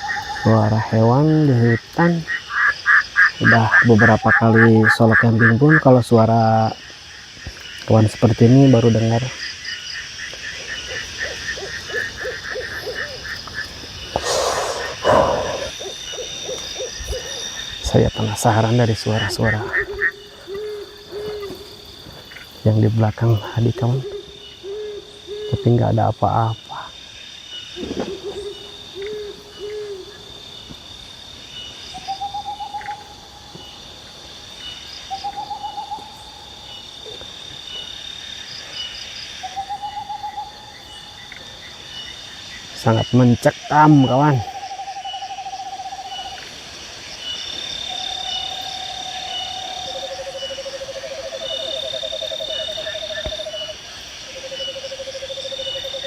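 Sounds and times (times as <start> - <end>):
high insect-like buzz: 0.0 - 25.5
insects whining: 0.0 - 56.0
owl hooting and trilling: 10.6 - 17.8, 19.2 - 21.6, 23.9 - 25.7, 28.1 - 30.2.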